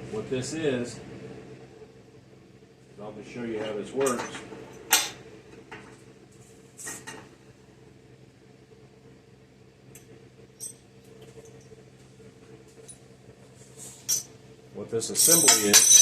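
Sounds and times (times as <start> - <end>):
steady low hum: 0.0 - 16.0
small metal parts clinking: 14.0 - 14.3, 15.1 - 16.0.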